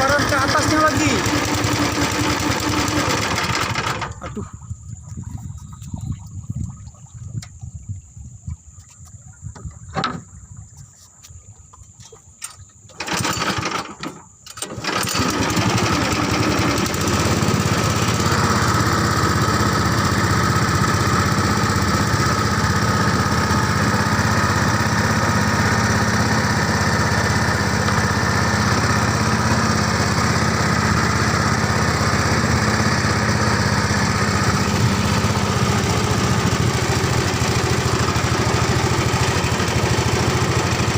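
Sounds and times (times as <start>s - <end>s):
small engine running: 0.0s - 4.6s, 13.0s - 40.9s.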